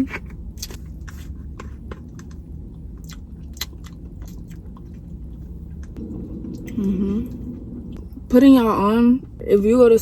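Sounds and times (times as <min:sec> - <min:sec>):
low background hum: 0:00.0 - 0:10.0
person chewing food: 0:00.6 - 0:06.0.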